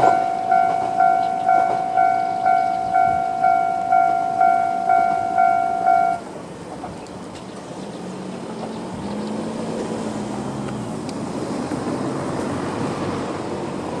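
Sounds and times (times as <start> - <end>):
vehicle engine pulling away: 7.7 - 14.0.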